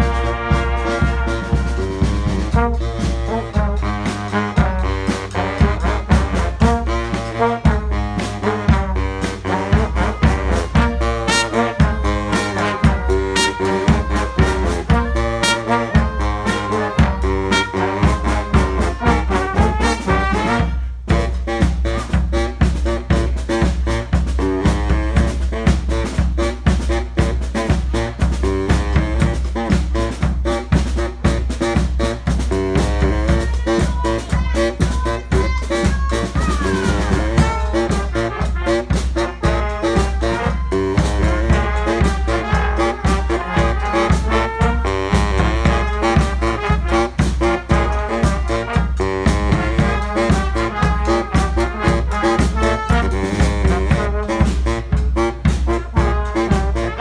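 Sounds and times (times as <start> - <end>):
falling horn slide: 0.0 - 2.6
brass band playing swing: 0.0 - 57.0.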